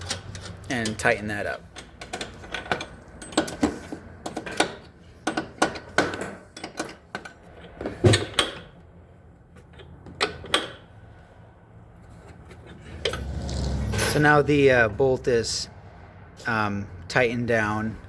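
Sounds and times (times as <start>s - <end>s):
wrench clicking and clanking: 0.0s - 7.4s.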